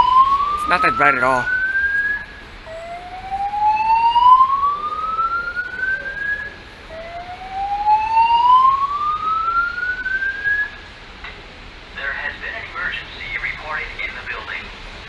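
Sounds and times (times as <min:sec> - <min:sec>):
recorded evacuation voice message: 0:00.6 - 0:01.6.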